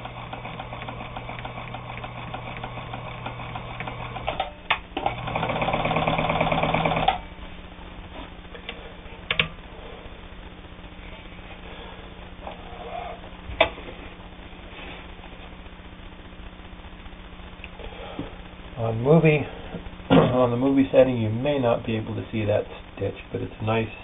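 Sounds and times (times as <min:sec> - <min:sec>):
sewing machine stitching: 0:00.0 - 0:07.2.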